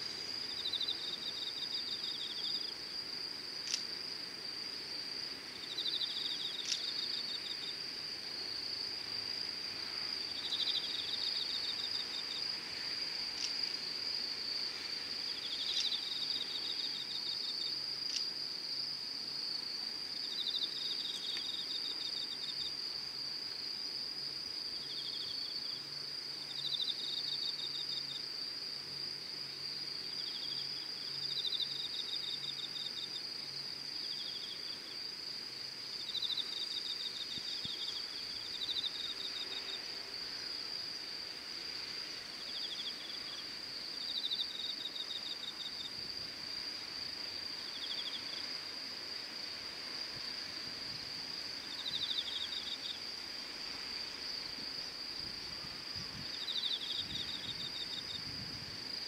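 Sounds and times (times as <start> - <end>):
insect pulsed chirping trill: 0.0 - 59.0
insect steady high trill: 0.0 - 59.0
faint ticks: 3.6 - 3.9, 6.6 - 7.0, 13.3 - 13.8, 18.1 - 18.4, 21.1 - 21.6.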